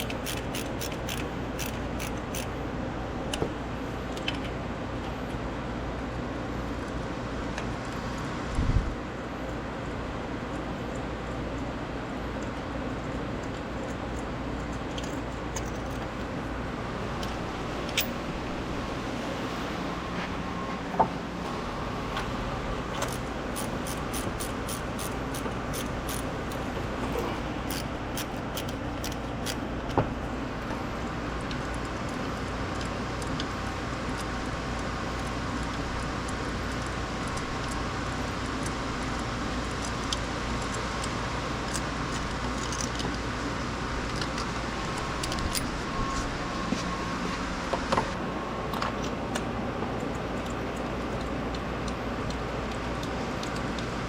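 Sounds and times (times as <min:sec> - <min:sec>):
hand tools clicking on metal: 0:00.0 - 0:02.5, 0:23.0 - 0:26.6, 0:27.6 - 0:29.6
steady hum: 0:00.0 - 0:54.0.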